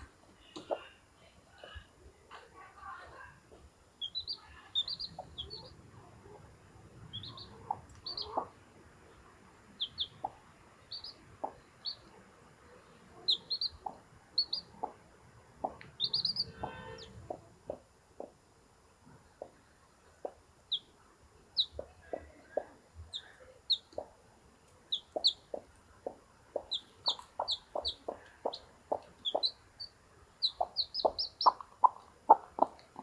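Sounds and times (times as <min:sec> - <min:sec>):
chicks peeping: 0:04.0 - 0:06.4, 0:07.1 - 0:08.6, 0:09.8 - 0:12.2, 0:13.2 - 0:15.0, 0:15.6 - 0:18.3, 0:20.2 - 0:20.9, 0:21.6 - 0:24.1, 0:24.9 - 0:33.0.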